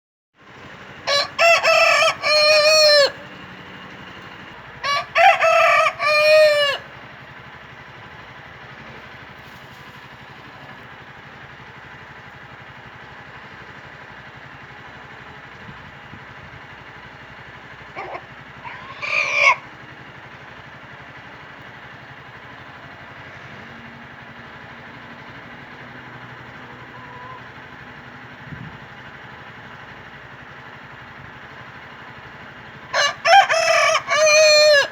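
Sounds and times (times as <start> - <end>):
rooster crowing: 1.0 - 3.7, 4.8 - 7.0, 18.0 - 19.7, 32.9 - 34.9.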